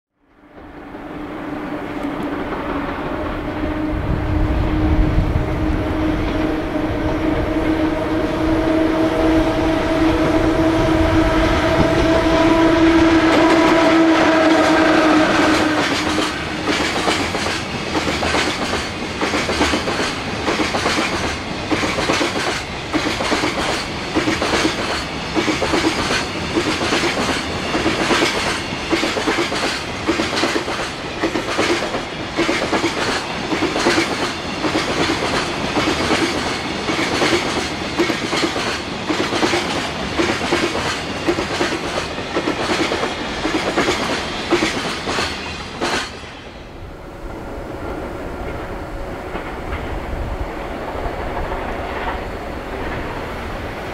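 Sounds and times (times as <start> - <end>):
train horn: 0.4 - 16.8
train wheels clattering on rails: 9.2 - 46.4, 48.4 - 53.4.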